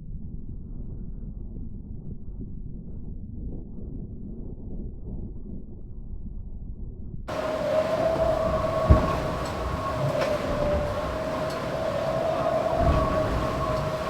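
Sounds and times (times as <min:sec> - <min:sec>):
rush of water and wind: 0:07.3 - 0:14.0
steady high whine: 0:07.3 - 0:14.0.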